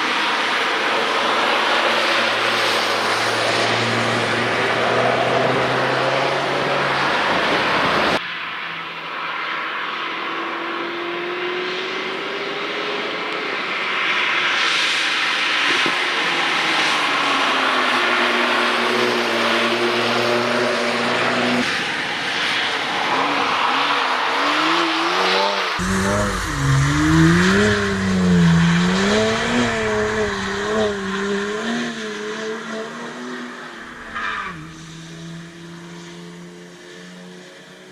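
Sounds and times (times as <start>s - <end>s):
car engines passing: 0.0s - 8.2s, 16.3s - 37.9s
car engine revving: 25.1s - 35.8s.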